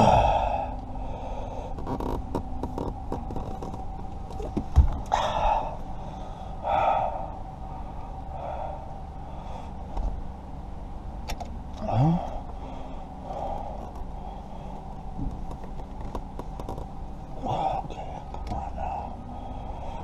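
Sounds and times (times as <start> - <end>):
person grunting: 0.0 - 0.7, 11.8 - 12.4.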